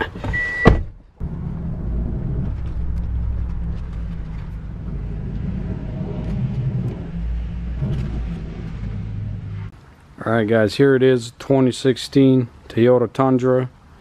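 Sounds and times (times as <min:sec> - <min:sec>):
pickup truck engine rumbling: 0:00.7 - 0:09.8.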